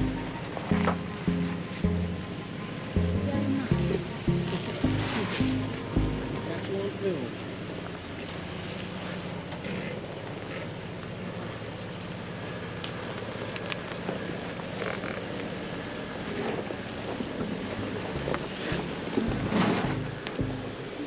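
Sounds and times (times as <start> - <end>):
engine running at low speed: 0.0 - 21.0
tyres rushing through wet mud: 6.5 - 21.0.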